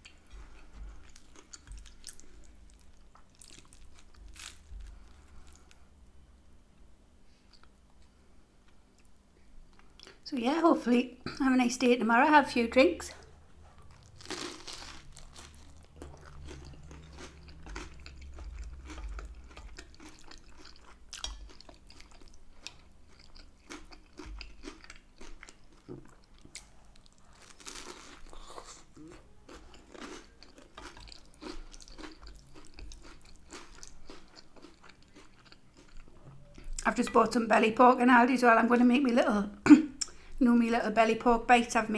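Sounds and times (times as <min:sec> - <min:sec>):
crunchy bites: 0:13.9 - 0:20.8.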